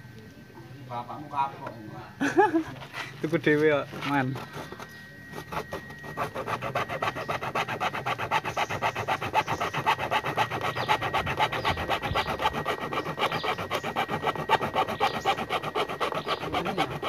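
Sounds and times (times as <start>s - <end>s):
hacksaw cutting metal: 3.9s - 17.0s.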